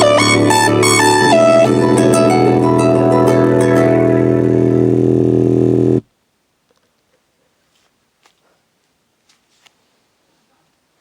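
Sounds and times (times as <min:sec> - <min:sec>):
bass-boosted ringtone remix: 0:00.0 - 0:06.0.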